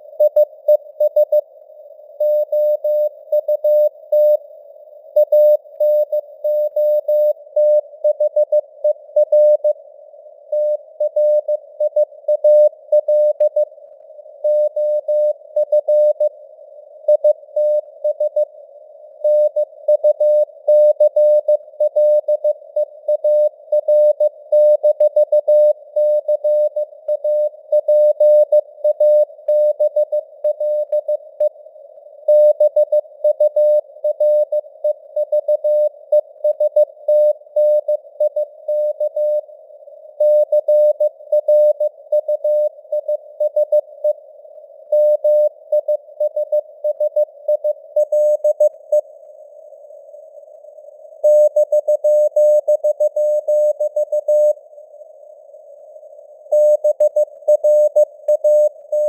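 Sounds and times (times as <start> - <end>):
morse code beeps: 51.2 - 54.6, 56.5 - 59.0.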